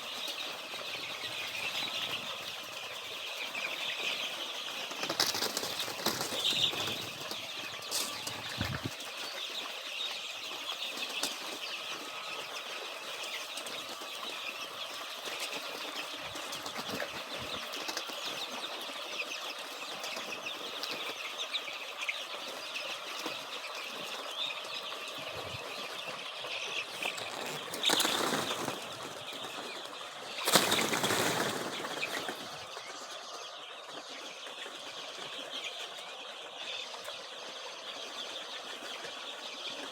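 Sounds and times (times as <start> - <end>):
chicks peeping: 0.0 - 39.9
rustling: 26.9 - 29.2.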